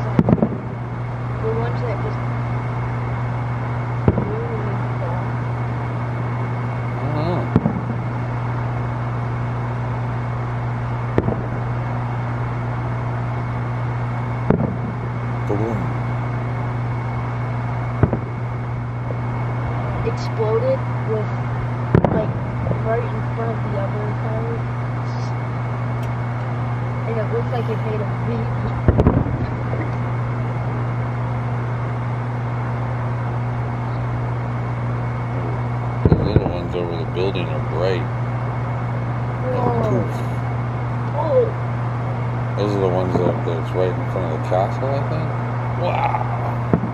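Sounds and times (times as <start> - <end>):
firework bang: 0.0 - 1.0, 4.0 - 4.7, 7.4 - 8.4, 11.0 - 12.5, 14.4 - 16.2, 17.8 - 20.2, 21.4 - 23.3, 27.6 - 30.4, 36.0 - 38.0, 46.6 - 46.9
low mechanical hum: 0.0 - 46.9.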